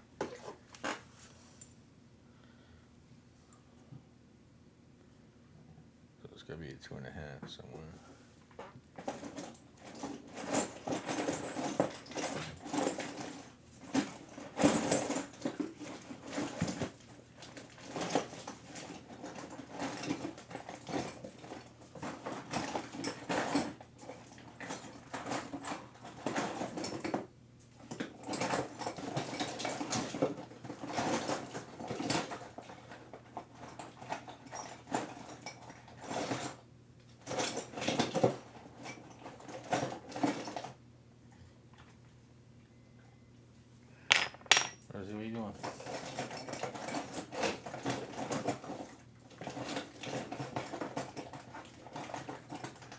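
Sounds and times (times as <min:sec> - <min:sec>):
metal screws rattling: 0:44.1 - 0:44.8.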